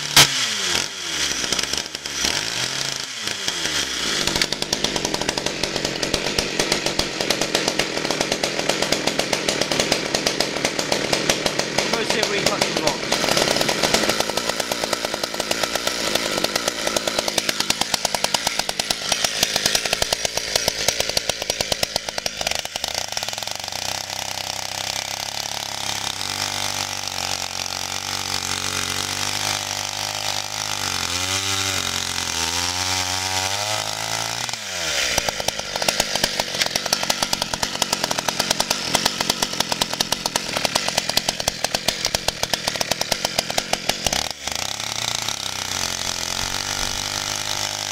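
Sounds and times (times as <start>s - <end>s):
two-stroke chainsaw running: 0.0s - 47.9s.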